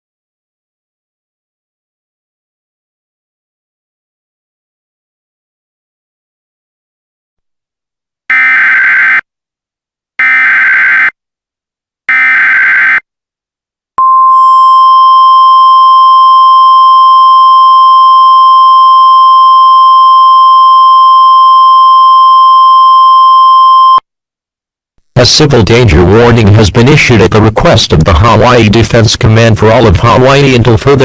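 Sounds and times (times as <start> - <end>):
steady attention tone: 8.3 - 9.2, 12.1 - 13.0.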